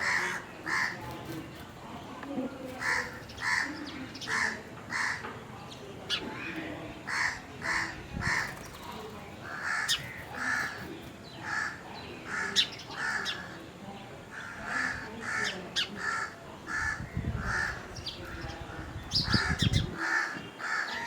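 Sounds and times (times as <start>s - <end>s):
crows cawing: 0.0s - 1.2s, 2.8s - 5.4s, 6.4s - 8.7s, 9.4s - 13.5s, 14.3s - 17.9s, 19.4s - 21.0s.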